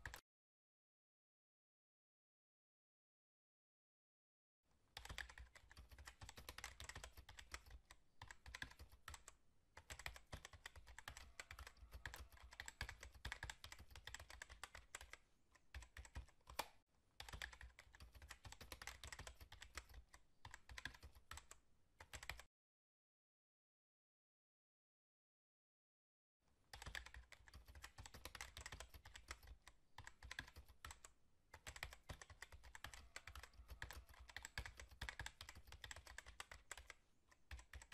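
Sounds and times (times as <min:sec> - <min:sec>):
typing on computer keyboard: 0:00.0 - 0:00.2, 0:05.0 - 0:22.5, 0:26.7 - 0:37.9.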